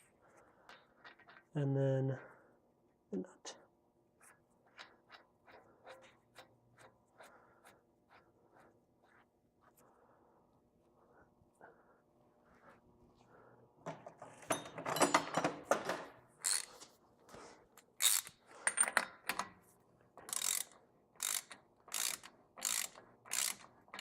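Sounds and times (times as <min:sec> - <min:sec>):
socket ratchet clicking: 0:16.4 - 0:16.7, 0:18.0 - 0:18.4, 0:20.2 - 0:24.0.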